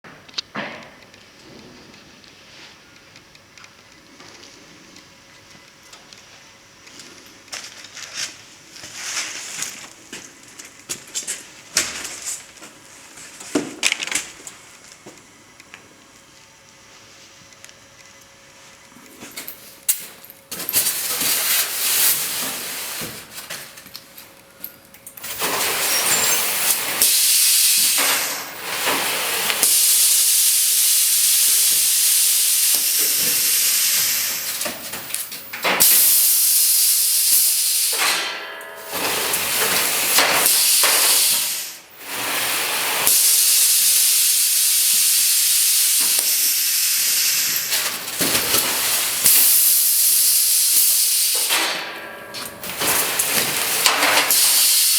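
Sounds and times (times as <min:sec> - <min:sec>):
packaging machine hissing: 0:19.8 - 0:54.9.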